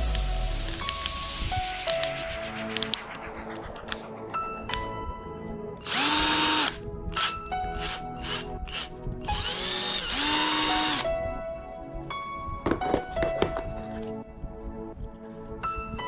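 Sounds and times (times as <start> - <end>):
background music: 0.0 - 16.0
cordless drill whining: 5.8 - 11.0.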